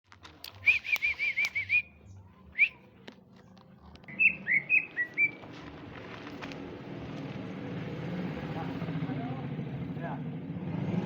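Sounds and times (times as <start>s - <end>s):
bird singing whistled notes: 0.5s - 2.9s, 4.1s - 5.4s.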